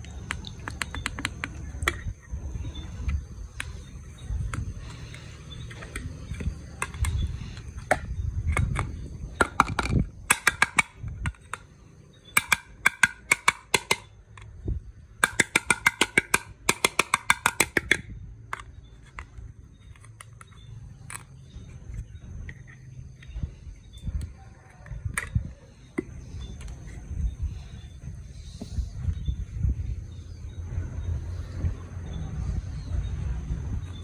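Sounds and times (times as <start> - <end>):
plastic toy gun clicking: 8.6 - 11.7, 12.4 - 14.5, 15.2 - 19.3.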